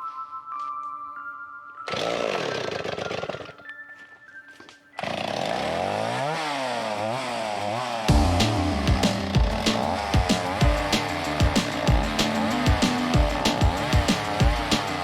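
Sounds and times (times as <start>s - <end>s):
chainsaw running: 1.9s - 3.6s, 5.0s - 15.0s.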